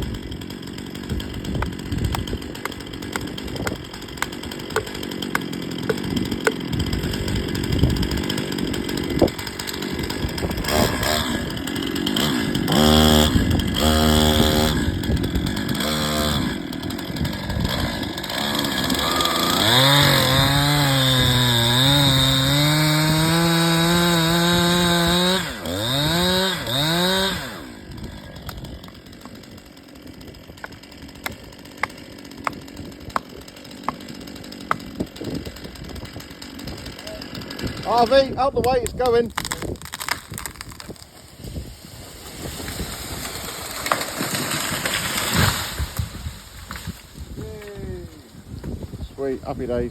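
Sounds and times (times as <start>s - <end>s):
chainsaw cutting tree trunk: 0.0s - 49.0s.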